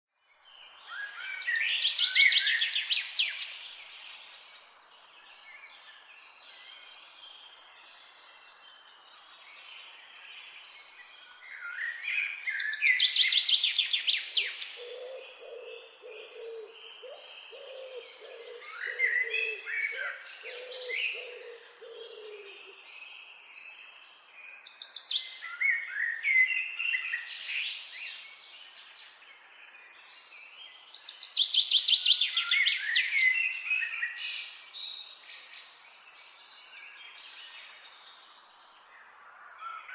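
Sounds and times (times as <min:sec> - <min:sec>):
chaffinch singing: 0:12.1 - 0:35.8
birds warbling: 0:14.7 - 0:22.7.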